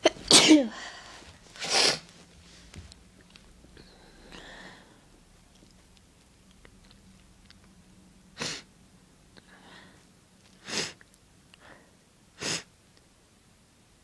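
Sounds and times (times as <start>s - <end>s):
wet human sneezes: 1.6s - 2.1s.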